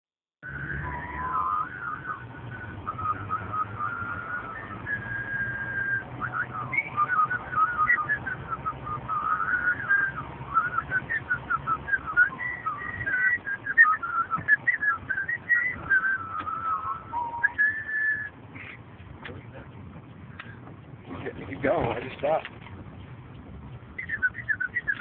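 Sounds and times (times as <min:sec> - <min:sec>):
car whistling squeals and chirps: 0:00.4 - 0:18.9, 0:23.8 - 0:25.0.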